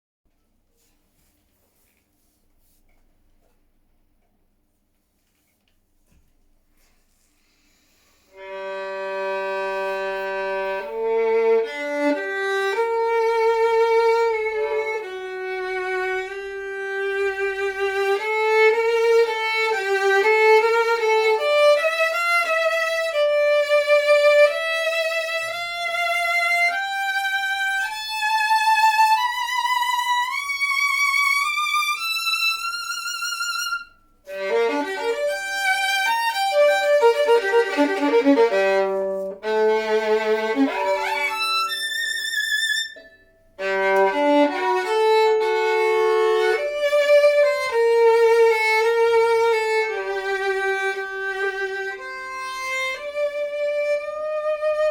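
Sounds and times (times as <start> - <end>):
solo violin playing: 8.2 - 54.9.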